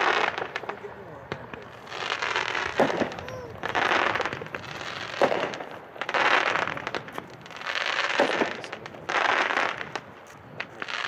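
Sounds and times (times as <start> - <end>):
firework shell bursting: 0.0 - 8.8
firework shot launching thump: 2.8 - 4.6.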